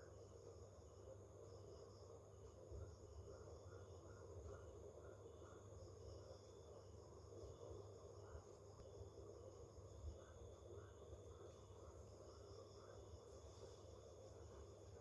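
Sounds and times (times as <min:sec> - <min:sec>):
faint insects chirping: 0:00.0 - 0:15.0.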